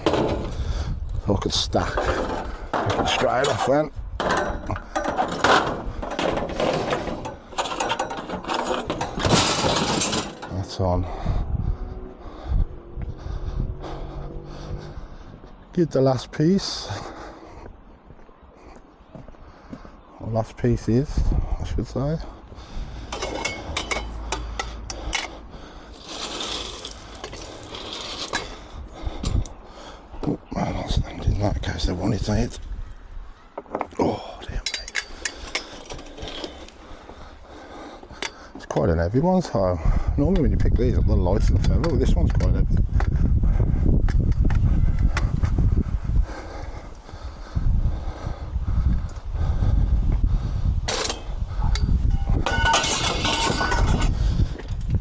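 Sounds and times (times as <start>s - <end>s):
scrap metal clattering and scraping: 0.0s - 11.0s, 23.0s - 29.6s, 34.6s - 37.2s, 50.9s - 55.0s.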